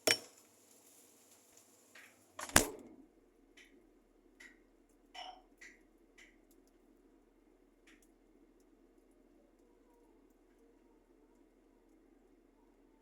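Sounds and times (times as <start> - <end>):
light clicks and taps: 4.4 - 7.0, 7.8 - 12.0.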